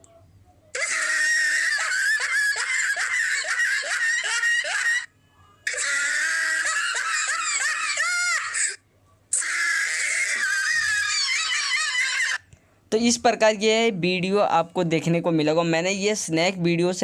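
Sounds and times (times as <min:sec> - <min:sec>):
high-pitched cackling laugh: 0:00.8 - 0:05.1, 0:05.7 - 0:12.5.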